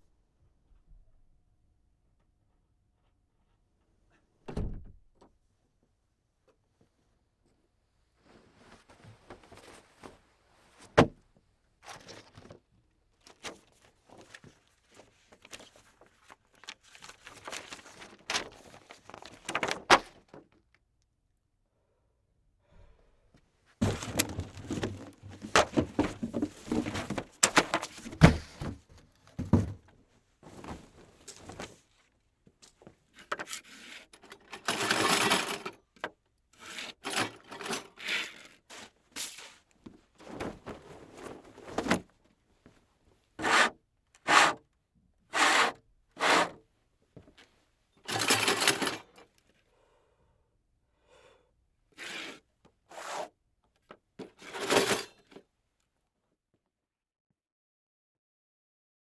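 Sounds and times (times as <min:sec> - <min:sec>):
rough scratching or rubbing: 0:45.4 - 0:46.6.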